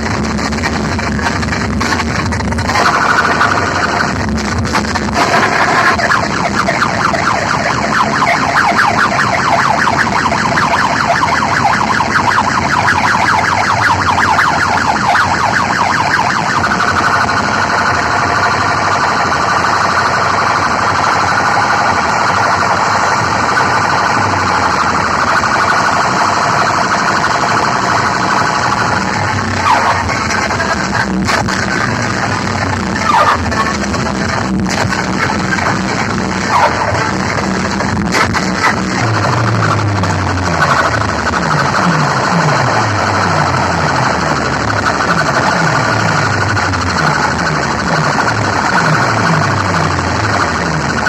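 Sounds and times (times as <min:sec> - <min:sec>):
distorted electronic siren alarm: 0:00.0 - 0:51.0.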